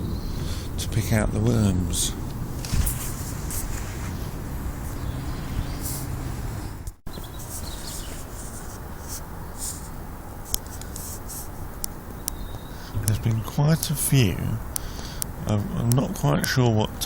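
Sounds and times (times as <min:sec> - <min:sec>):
steady low rumble: 0:00.0 - 0:07.0.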